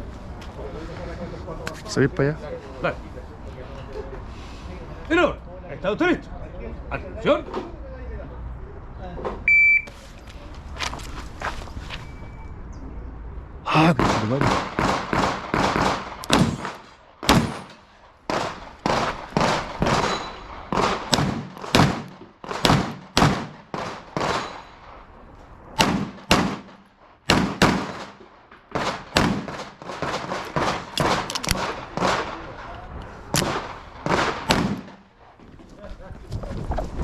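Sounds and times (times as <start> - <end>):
pistol shots with echo: 13.9 - 24.9, 25.8 - 32.5, 33.4 - 35.0.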